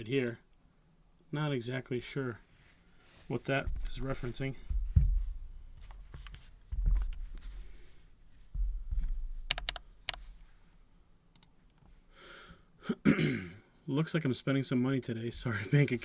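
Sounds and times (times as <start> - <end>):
low thuds of handling: 3.3 - 10.6
mechanical keyboard keys clicking: 9.5 - 10.2.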